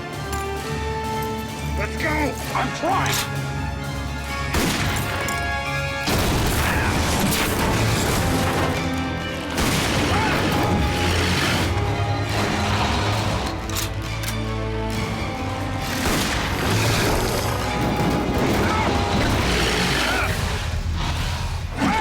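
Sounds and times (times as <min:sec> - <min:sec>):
dramatic orchestral music: 0:00.0 - 0:22.0
heavy crashes and booms: 0:06.0 - 0:11.8.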